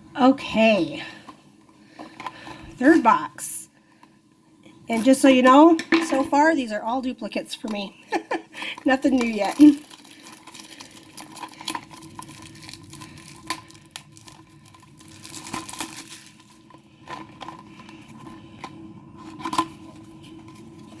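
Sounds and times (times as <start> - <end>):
packaging crinkling and tearing: 8.6 - 21.0.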